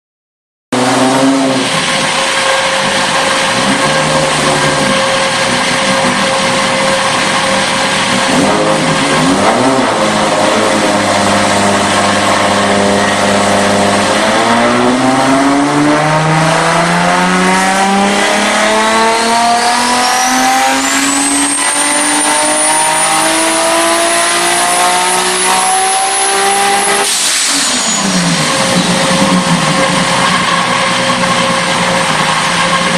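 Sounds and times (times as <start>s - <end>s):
car engine revving: 0.7s - 32.9s
high turbo whistle: 9.6s - 32.0s.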